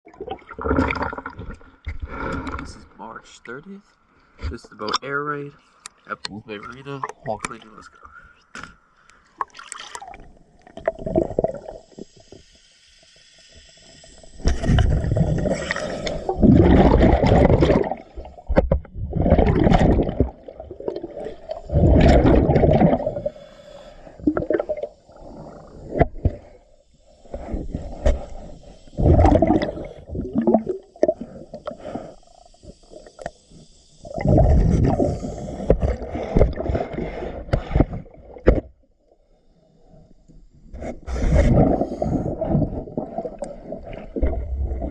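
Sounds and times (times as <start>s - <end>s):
underwater regulator bubbles: 0.1s - 2.8s, 9.4s - 12.3s, 14.2s - 26.6s, 27.3s - 33.3s, 34.0s - 38.7s, 40.8s - 44.9s
scraping underwater: 0.1s - 2.9s, 14.4s - 23.5s, 27.3s - 32.1s, 34.1s - 38.8s, 40.8s - 44.9s.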